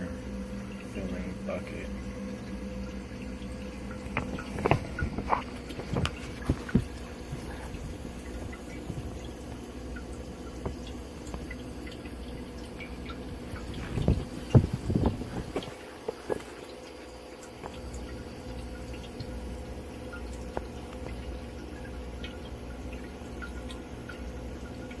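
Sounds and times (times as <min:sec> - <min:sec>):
humidifier and fan humming: 0:00.0 - 0:25.0
water dripping and trickling: 0:00.0 - 0:25.0.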